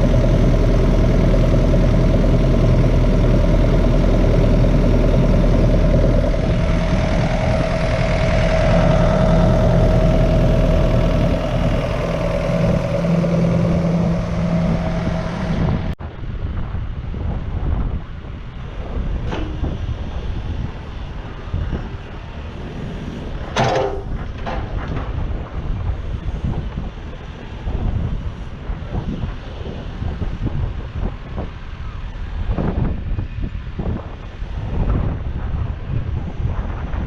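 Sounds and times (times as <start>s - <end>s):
excavator diesel engine running: 0.0s - 16.0s.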